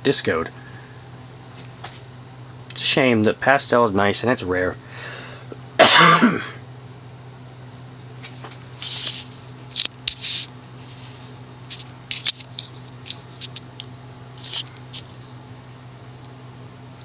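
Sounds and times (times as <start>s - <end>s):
steady low hum: 0.0s - 17.0s
scratching and clicking handling noises: 8.2s - 15.4s.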